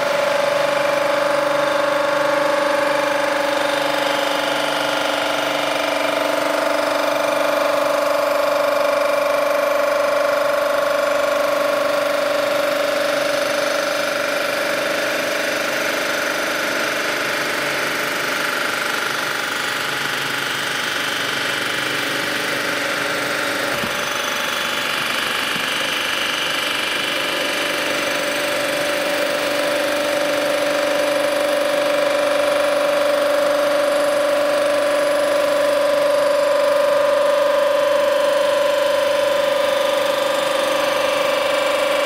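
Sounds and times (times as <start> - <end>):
resurfacing machine whining: 0.0 - 42.0.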